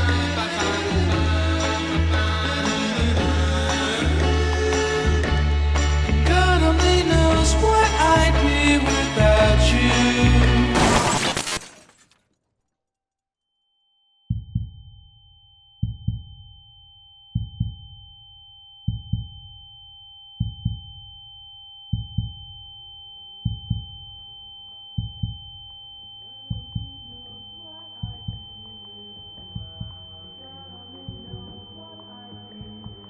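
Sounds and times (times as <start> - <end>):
heartbeat thumps: 14.3 - 15.0, 15.8 - 16.6, 17.4 - 18.1, 18.9 - 19.6, 20.4 - 21.2, 21.9 - 22.7, 23.4 - 24.3, 25.0 - 25.8, 26.5 - 27.2, 28.0 - 28.8, 29.4 - 30.1
high ringing tone: 23.0 - 33.0.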